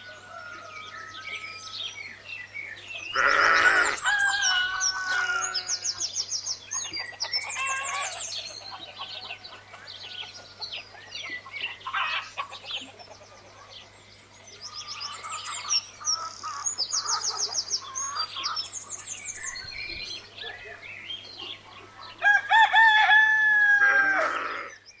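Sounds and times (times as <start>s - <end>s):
rooster crowing: 0.0s - 1.9s, 3.2s - 5.8s, 22.2s - 24.7s
small birds chirping: 0.9s - 23.0s
chickens clucking: 6.8s - 14.0s.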